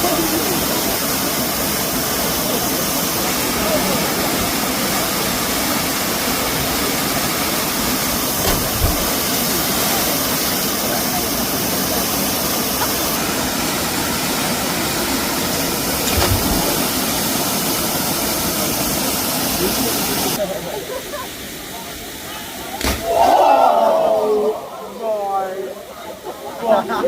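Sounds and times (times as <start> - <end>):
waterfall roaring: 0.0 - 27.0
brief low thumps: 8.4 - 9.2.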